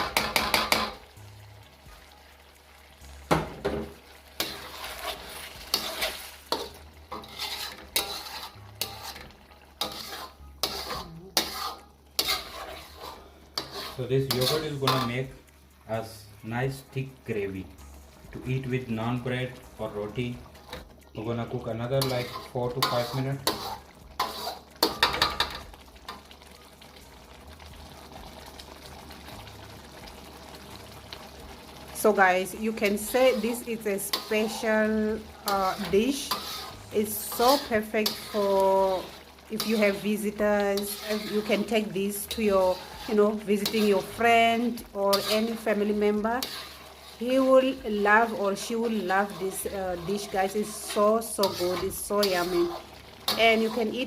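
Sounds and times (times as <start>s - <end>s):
spatula scraping and knocking pan: 0.0s - 1.1s, 3.3s - 15.2s, 21.8s - 25.7s, 32.8s - 54.0s
meat sizzling in a pan: 0.0s - 54.0s.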